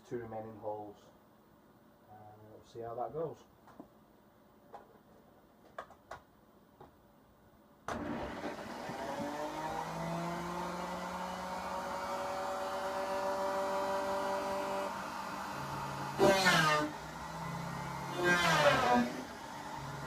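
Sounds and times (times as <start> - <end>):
router spindle whining: 8.0 - 20.0.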